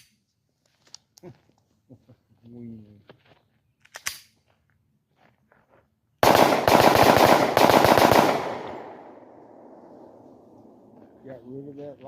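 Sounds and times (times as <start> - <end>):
pistol rapid fire: 6.2 - 9.7
gunshot echo: 6.2 - 10.8.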